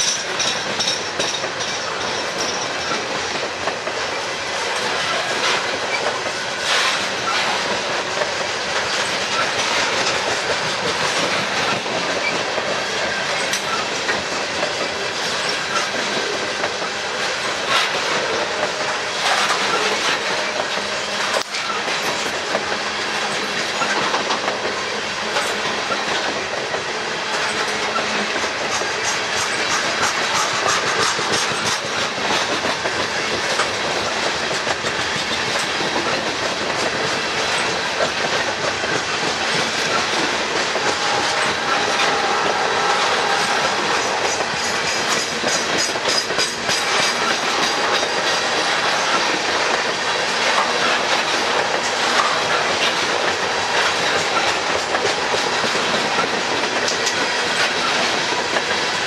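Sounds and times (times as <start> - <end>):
wheels clicking over rail joints: 0.0 - 4.1, 4.7 - 59.0
freight train wheels rumbling on rails: 0.0 - 59.0.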